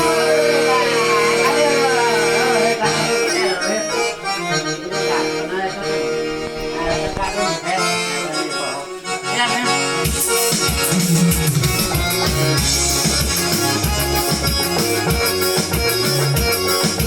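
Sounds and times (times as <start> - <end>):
keyboard accordion melody: 0.0 - 17.0
drum beat: 10.1 - 17.0.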